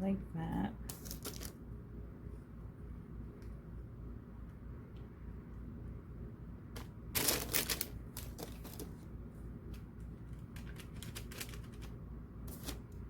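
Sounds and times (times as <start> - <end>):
steady low hum: 0.0 - 13.0
hands clicking and rustling: 9.7 - 12.8.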